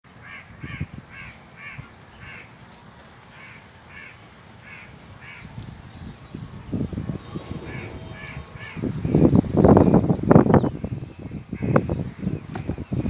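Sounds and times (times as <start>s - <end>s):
crow cawing: 0.2s - 2.5s, 3.4s - 5.5s, 7.7s - 8.8s.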